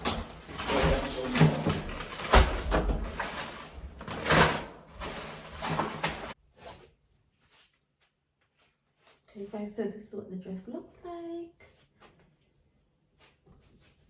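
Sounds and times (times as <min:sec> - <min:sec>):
knocks and thumps: 0:00.0 - 0:06.4
rustling: 0:00.0 - 0:06.8.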